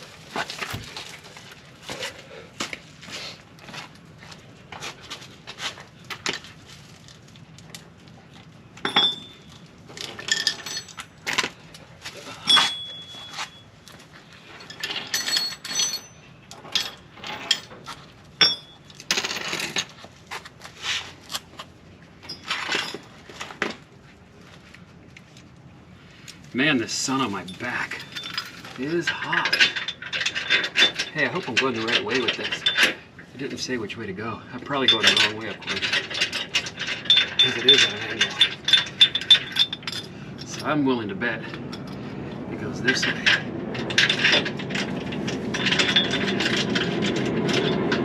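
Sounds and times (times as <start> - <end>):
metal tools clinking: 8.8 - 20.0, 22.2 - 23.3, 27.0 - 33.0, 34.6 - 42.0, 42.9 - 48.0.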